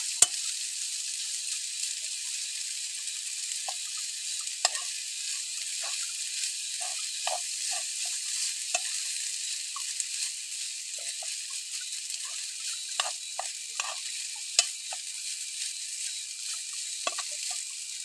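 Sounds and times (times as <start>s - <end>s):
food sizzling in a pan: 0.0s - 18.0s.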